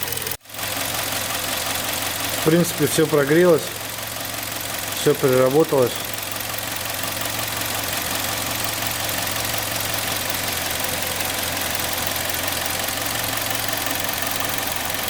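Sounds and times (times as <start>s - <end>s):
car engine idling: 0.0s - 15.0s
fuel injectors ticking: 0.0s - 15.0s.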